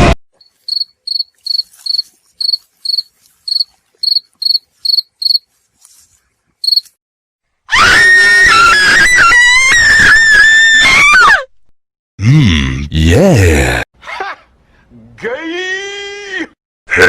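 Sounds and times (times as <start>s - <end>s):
cricket chirping: 0.4s - 5.5s, 6.6s - 6.9s.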